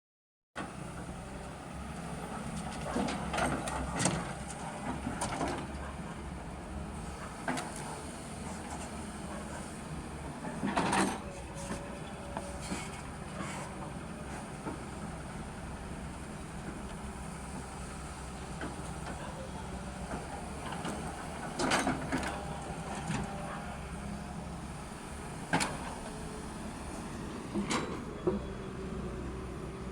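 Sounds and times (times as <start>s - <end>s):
diesel engine running: 0.8s - 29.9s
clunks and rattles: 10.4s - 11.8s, 20.0s - 23.6s, 25.4s - 26.2s, 27.4s - 28.5s.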